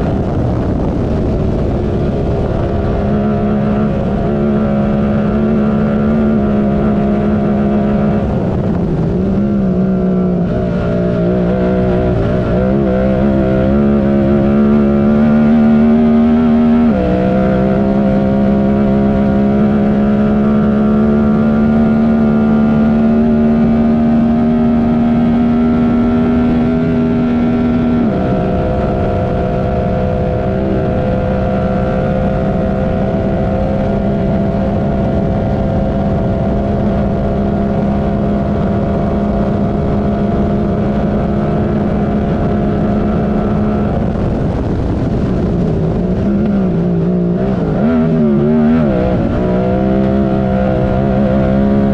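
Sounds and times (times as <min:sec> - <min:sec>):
utility vehicle engine revving: 0:00.0 - 0:51.9.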